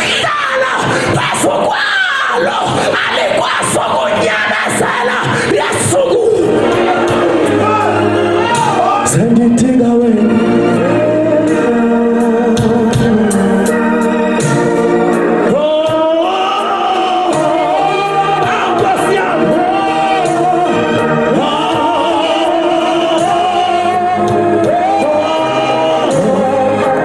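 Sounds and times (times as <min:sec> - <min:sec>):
gospel singing: 0:00.0 - 0:27.0
electronic organ chords: 0:04.3 - 0:27.0.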